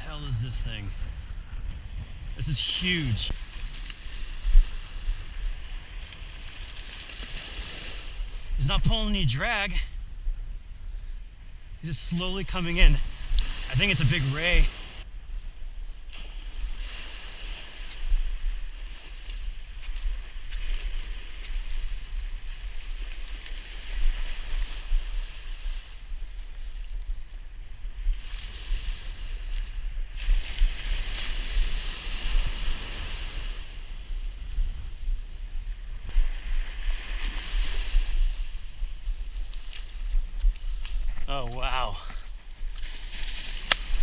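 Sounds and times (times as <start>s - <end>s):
surf washing onto beach: 0.0s - 9.9s, 11.9s - 15.1s, 28.1s - 44.0s
wind rumble on microphone: 0.0s - 44.0s.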